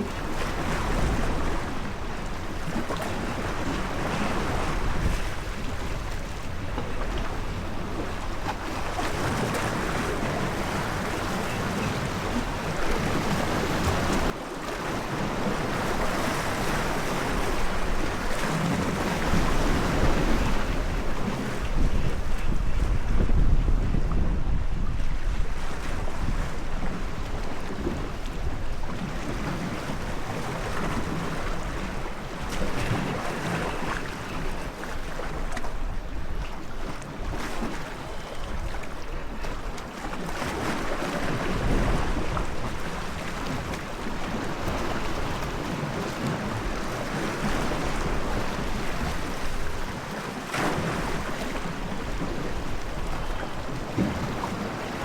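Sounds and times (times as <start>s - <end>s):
wind buffeting microphone: 0.0s - 14.4s, 15.4s - 50.0s
sea waves: 0.0s - 55.0s.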